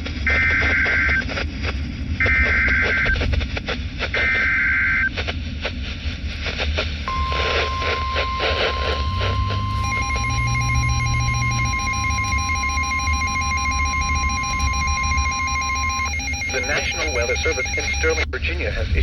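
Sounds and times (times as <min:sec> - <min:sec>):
radio static crackling: 0:00.0 - 0:19.0
rapid warbling electronic beep: 0:07.1 - 0:19.0
steady warning alarm tone: 0:07.1 - 0:19.0.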